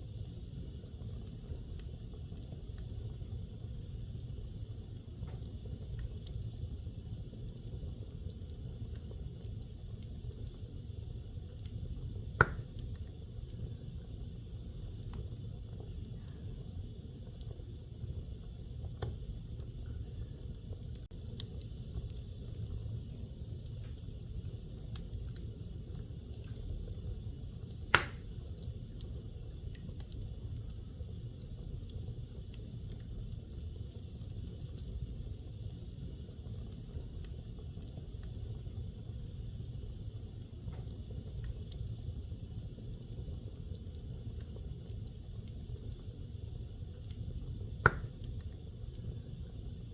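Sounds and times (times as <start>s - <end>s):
fire crackling: 0.0s - 49.9s
fire rumbling in a fireplace: 0.0s - 49.9s
loud sharp pop: 12.4s - 12.7s, 27.9s - 28.3s, 47.8s - 48.2s.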